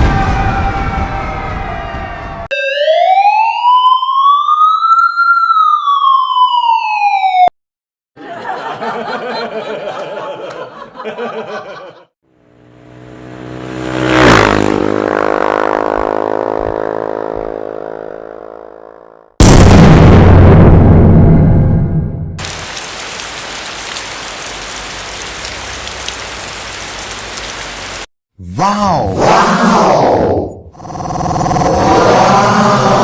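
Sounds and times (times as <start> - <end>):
siren-like wail: 0.0 - 7.5.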